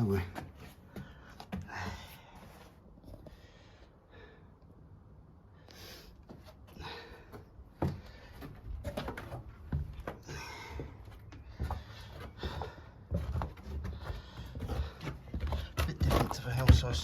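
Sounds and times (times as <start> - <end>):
footsteps crunching over debris: 7.8 - 17.0.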